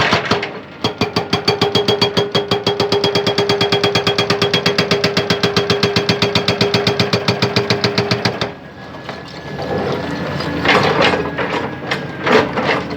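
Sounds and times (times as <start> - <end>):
hydraulic breaker hammering rock: 0.0 - 8.6.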